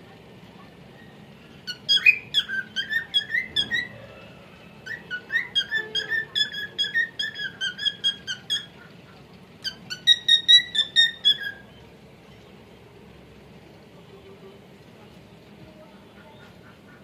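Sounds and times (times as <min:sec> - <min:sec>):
cockatiel whistling song: 0:00.9 - 0:04.0, 0:04.8 - 0:08.7, 0:09.6 - 0:11.8.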